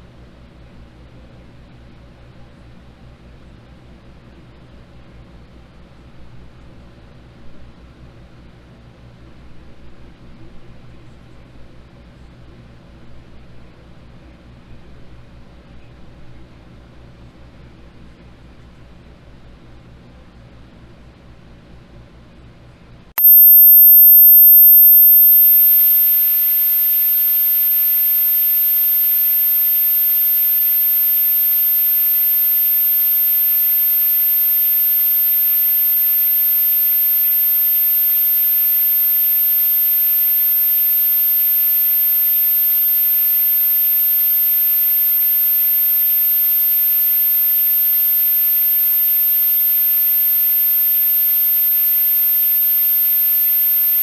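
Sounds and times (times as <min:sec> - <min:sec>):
faint low buzz: 0:23.2 - 0:54.0
high-pitched whine: 0:23.2 - 0:54.0
tv static hiss: 0:23.2 - 0:54.0.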